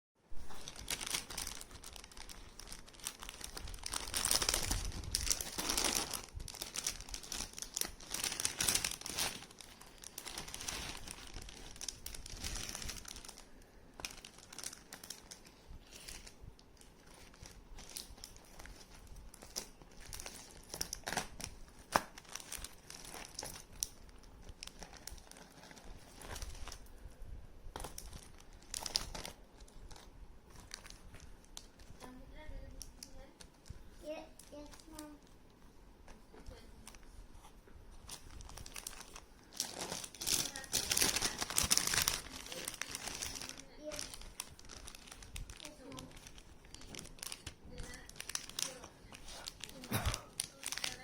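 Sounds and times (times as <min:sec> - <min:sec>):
packaging crinkling and tearing: 0:00.4 - 0:27.0, 0:27.7 - 0:33.8, 0:38.0 - 0:51.0.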